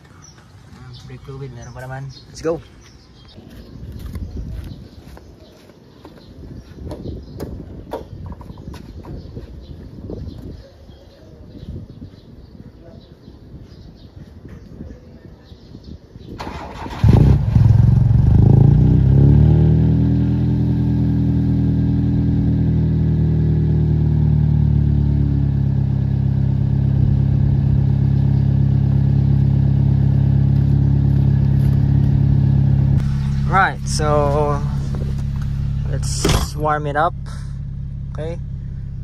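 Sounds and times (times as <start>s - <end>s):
car engine cranking: 16.4s - 17.9s, 30.6s - 39.0s
car engine idling: 20.1s - 39.0s.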